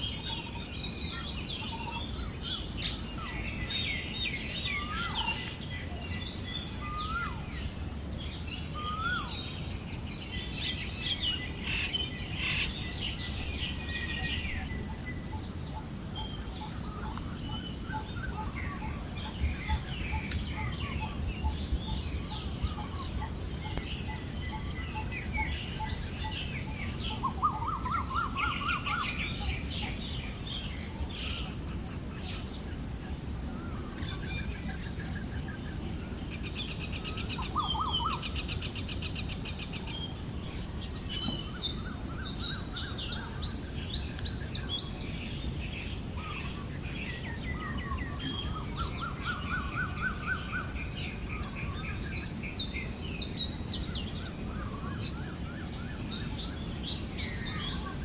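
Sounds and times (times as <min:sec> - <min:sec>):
birds chirping: 0:00.0 - 0:32.7
gentle breeze hiss: 0:00.0 - 0:58.0.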